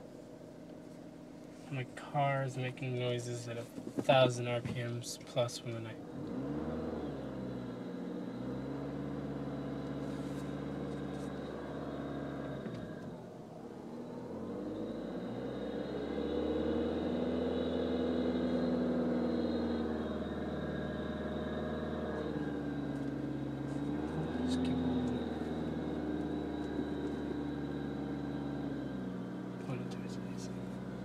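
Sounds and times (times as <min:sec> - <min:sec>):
diesel car engine running: 0:00.0 - 0:31.0.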